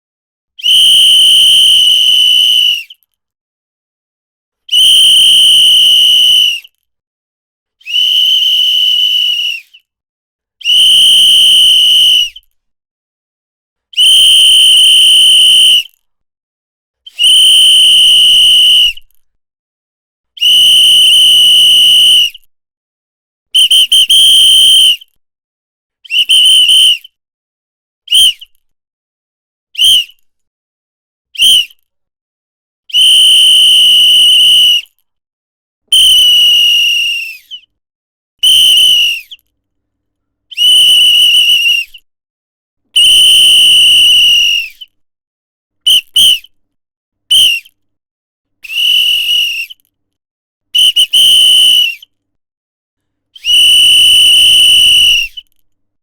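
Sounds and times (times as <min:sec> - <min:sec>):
whistle blasts: 0:00.6 - 0:03.0, 0:07.8 - 0:09.7, 0:20.4 - 0:22.4, 0:23.6 - 0:25.0, 0:26.1 - 0:27.1, 0:28.1 - 0:28.4, 0:29.8 - 0:30.2, 0:31.4 - 0:31.8, 0:32.9 - 0:34.9, 0:35.9 - 0:37.6, 0:38.4 - 0:39.4, 0:40.5 - 0:42.0, 0:43.0 - 0:44.9, 0:45.9 - 0:46.5, 0:47.3 - 0:47.7, 0:48.6 - 0:49.8, 0:50.8 - 0:52.1, 0:53.4 - 0:55.5.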